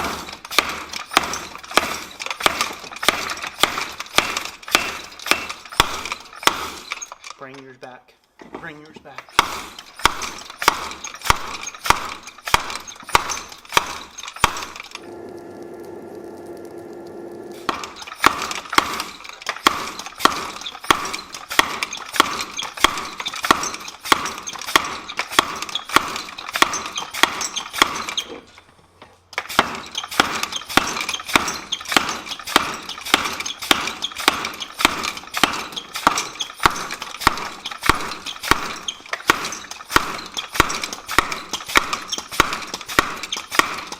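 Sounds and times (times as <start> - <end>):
hammer pounding hot steel: 0.0 - 7.3, 9.2 - 28.4, 29.4 - 43.9
steady hum: 15.0 - 17.8.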